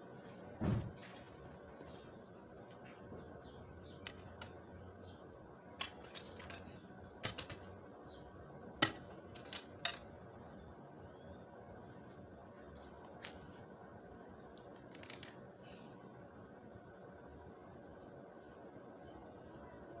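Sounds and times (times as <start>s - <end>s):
bird chirp: 0.2s - 4.2s, 10.6s - 11.5s.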